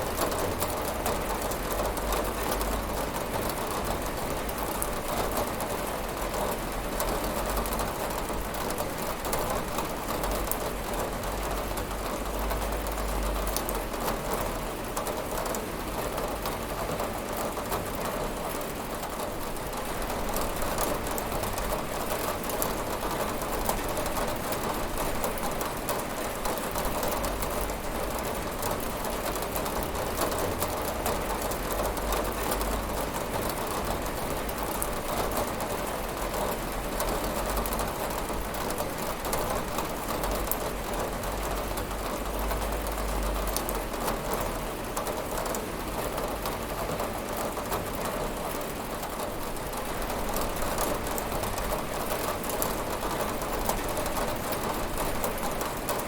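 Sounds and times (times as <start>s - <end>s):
rain pattering on a window: 0.0s - 56.0s.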